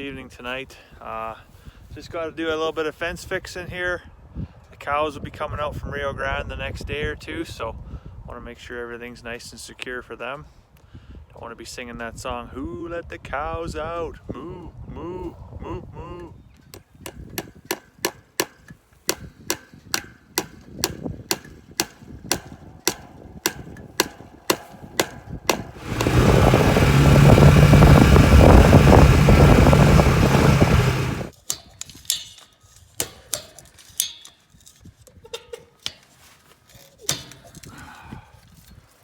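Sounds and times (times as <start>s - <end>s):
loud steady rush with hum: 25.0s - 31.3s.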